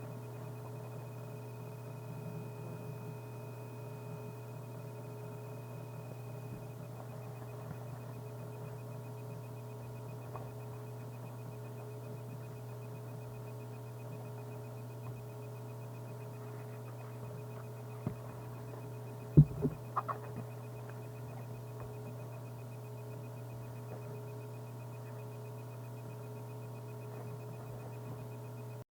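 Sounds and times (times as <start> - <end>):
electrical hum: 0.0 - 28.8
sharp knocks: 19.4 - 20.1.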